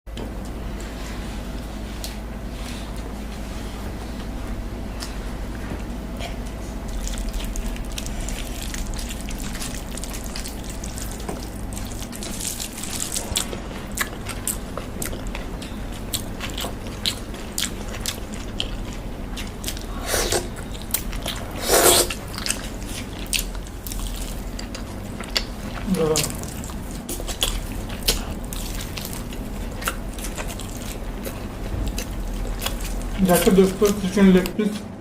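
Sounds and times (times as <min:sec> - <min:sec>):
person chewing chicken: 0:06.2 - 0:34.0.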